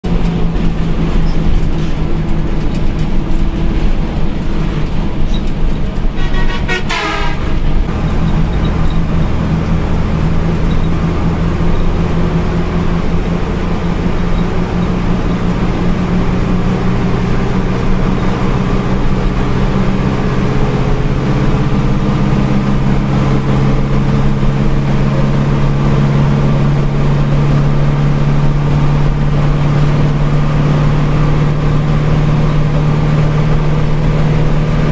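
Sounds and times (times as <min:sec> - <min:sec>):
bus diesel engine droning: 0:00.0 - 0:34.9
horn toot: 0:06.1 - 0:07.9.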